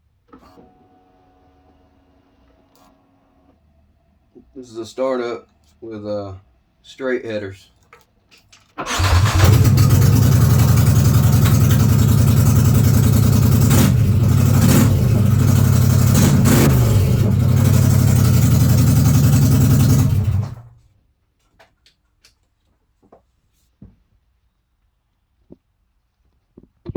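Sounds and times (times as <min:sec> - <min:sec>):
engine throttle blips: 0:08.8 - 0:20.8
loud engine starting and idling: 0:08.8 - 0:20.8.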